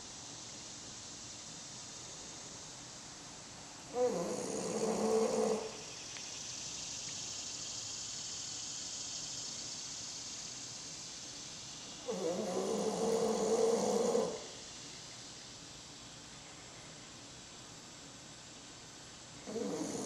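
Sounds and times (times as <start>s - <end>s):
breathy hiss: 0.0s - 17.2s, 19.4s - 20.0s.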